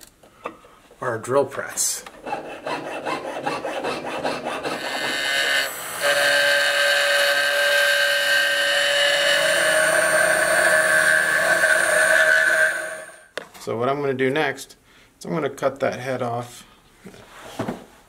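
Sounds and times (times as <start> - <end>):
file scraping metal: 2.1 - 13.2
drill press whining: 4.0 - 13.3.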